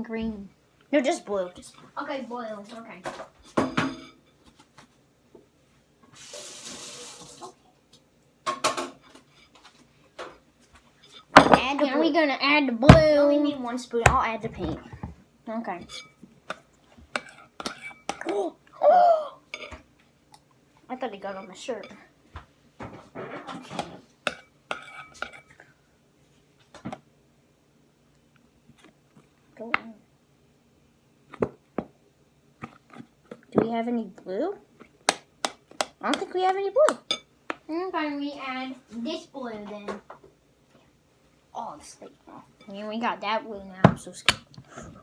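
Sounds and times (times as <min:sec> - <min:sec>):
water tap running: 0:06.2 - 0:07.6.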